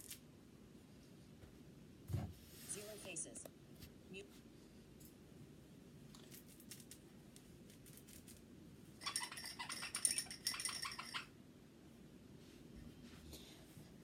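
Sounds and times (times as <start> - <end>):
soft toy crinkling: 6.2 - 11.1
toy squeak: 9.0 - 11.3.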